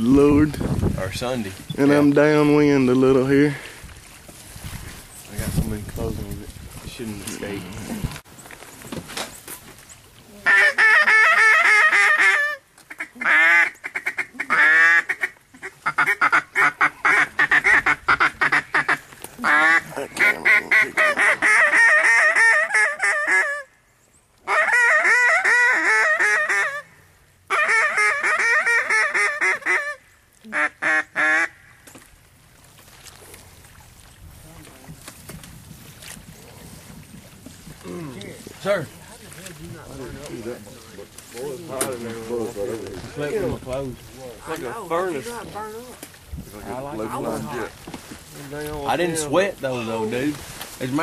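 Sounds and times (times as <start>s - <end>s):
duck call quacking: 10.4s - 23.7s, 24.4s - 31.7s.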